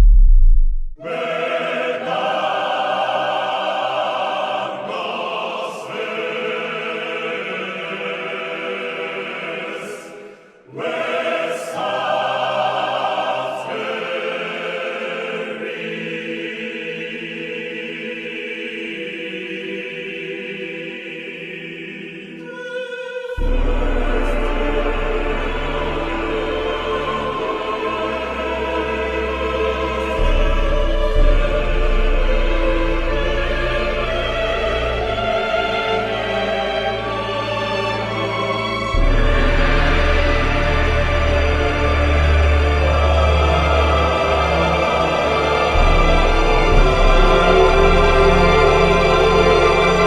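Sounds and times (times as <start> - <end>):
choir singing sustained notes: 0.0 - 50.0
orchestral music: 23.4 - 50.0.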